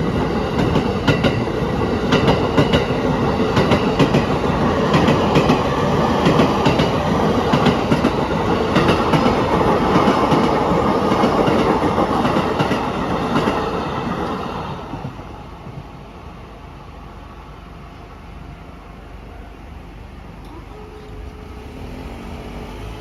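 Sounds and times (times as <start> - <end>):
train wheels clacking: 0.0 - 15.8
train rumble: 0.0 - 23.0.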